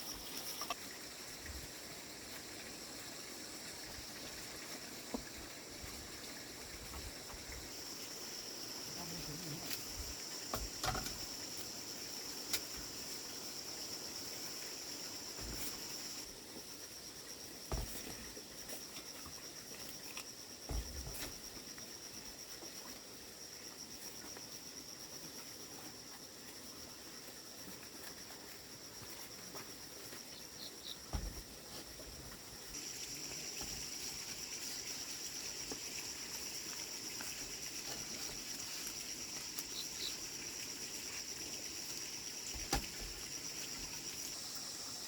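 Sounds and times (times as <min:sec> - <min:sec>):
insect chorus: 0:00.0 - 0:45.0
short knocks and thuds: 0:15.4 - 0:15.8, 0:17.7 - 0:18.2, 0:20.7 - 0:21.4, 0:31.1 - 0:31.7, 0:42.5 - 0:43.2.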